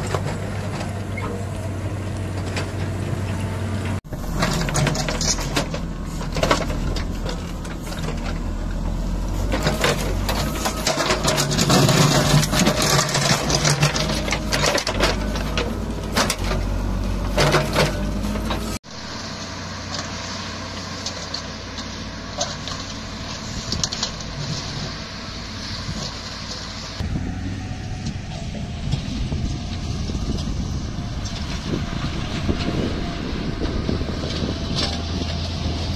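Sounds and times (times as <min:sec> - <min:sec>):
machinery engine humming: 0:00.0 - 0:35.9
clatter and knocks: 0:04.2 - 0:08.4, 0:09.5 - 0:18.7.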